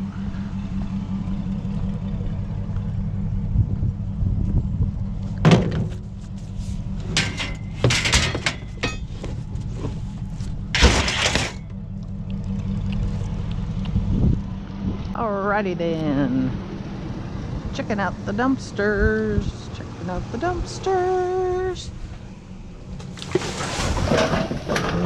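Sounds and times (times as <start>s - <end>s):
vehicle engine droning: 0.0s - 25.0s
loud clattering bangs: 10.7s - 11.7s.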